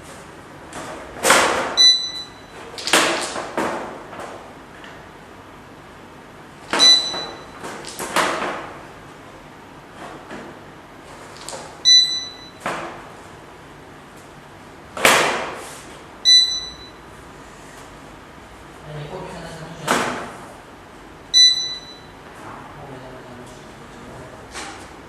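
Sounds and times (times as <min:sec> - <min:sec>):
short electronic beeps: 0:01.8 - 0:02.6, 0:06.8 - 0:07.6, 0:11.8 - 0:12.6, 0:16.2 - 0:17.0, 0:21.3 - 0:22.2.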